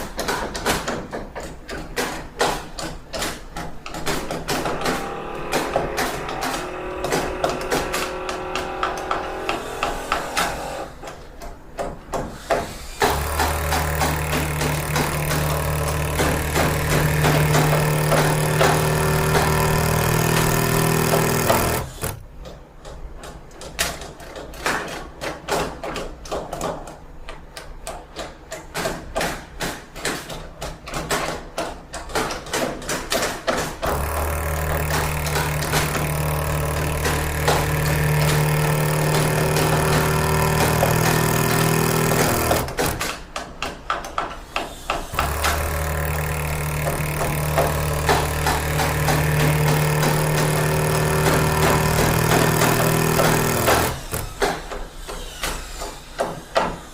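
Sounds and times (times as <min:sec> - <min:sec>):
rapid irregular knocking and clattering: 0:00.0 - 0:54.8
machine motor humming: 0:04.0 - 0:11.3, 0:13.0 - 0:22.2, 0:33.8 - 0:43.0, 0:45.1 - 0:54.4.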